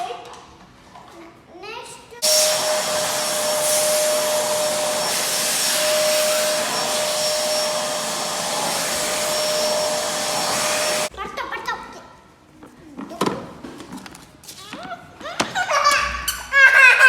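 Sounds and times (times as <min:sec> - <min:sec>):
vacuum cleaner running: 0:02.2 - 0:11.1.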